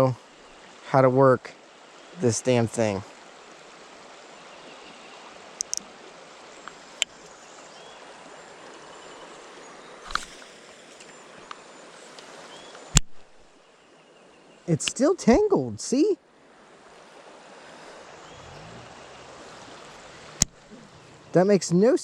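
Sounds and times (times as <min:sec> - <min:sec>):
flowing river water: 0:00.0 - 0:22.0
light clicks: 0:05.6 - 0:05.9.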